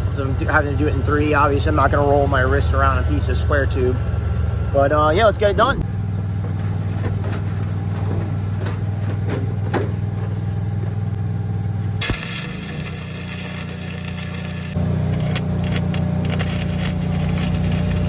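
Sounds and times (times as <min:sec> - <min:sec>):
engine hum: 0:00.0 - 0:18.0
welding arc crackling hiss: 0:12.0 - 0:18.0.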